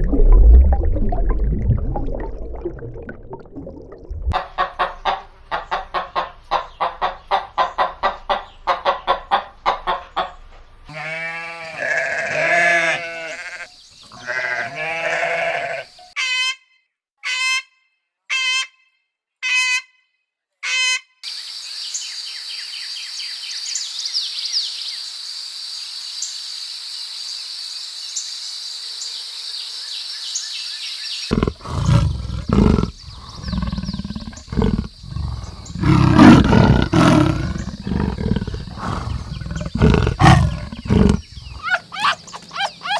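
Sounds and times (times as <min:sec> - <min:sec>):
hen clucking: 0:04.3 - 0:11.2, 0:31.3 - 0:42.9
sheep or goats bleating: 0:10.9 - 0:15.9
big cat growling and roaring: 0:31.3 - 0:42.9.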